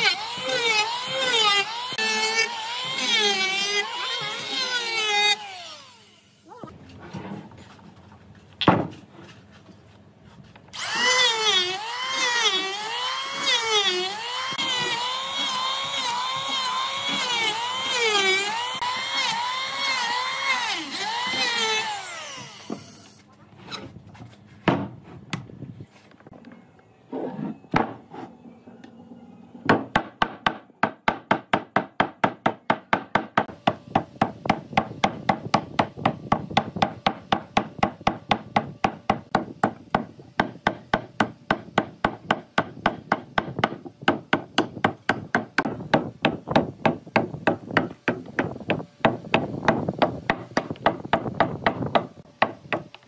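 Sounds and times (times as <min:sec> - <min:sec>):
power tool whining on wood: 0:00.0 - 0:06.5, 0:10.8 - 0:23.2.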